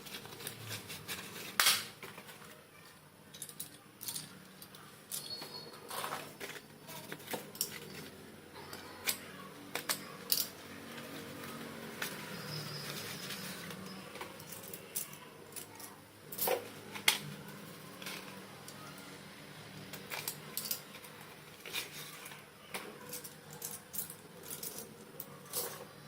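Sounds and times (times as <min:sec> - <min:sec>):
slate pencils clicking together: 0:06.4 - 0:10.6.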